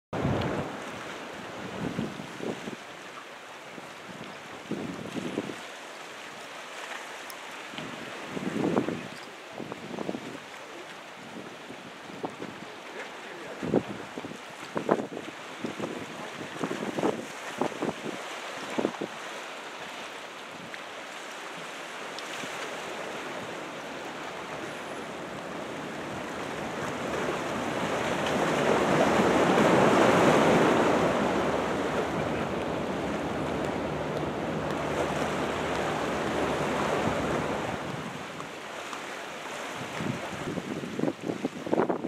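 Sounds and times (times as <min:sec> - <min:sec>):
wind on microphone: 0:00.1 - 0:02.9, 0:03.8 - 0:05.6, 0:07.8 - 0:10.5, 0:13.4 - 0:19.3, 0:23.1 - 0:38.5, 0:39.5 - 0:42.0
ocean surf breaking: 0:00.2 - 0:42.0.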